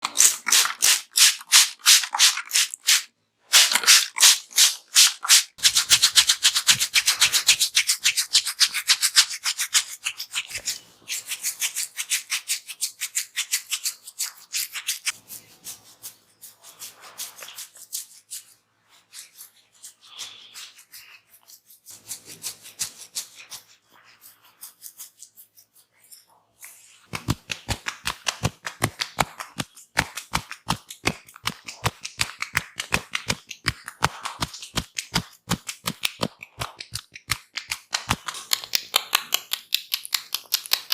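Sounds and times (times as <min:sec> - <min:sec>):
hands rubbing hair and skin: 0:00.1 - 0:39.6.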